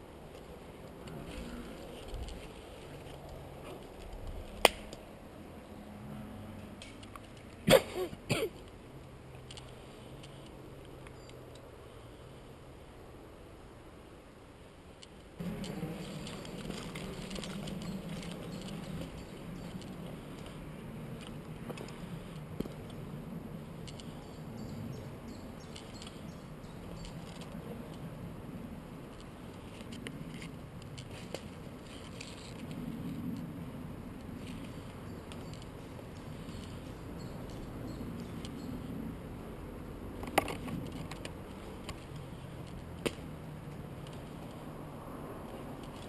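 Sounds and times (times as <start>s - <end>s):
rustling through undergrowth: 0.1s - 5.1s, 15.4s - 23.0s, 29.1s - 39.1s
twigs snapping and crackling: 0.4s - 5.0s, 15.6s - 20.6s.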